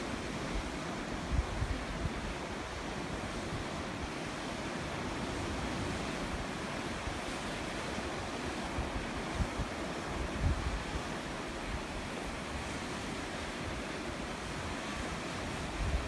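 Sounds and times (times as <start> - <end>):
sea waves washing on shore: 0.0 - 16.0
wind buffeting microphone: 8.7 - 11.9.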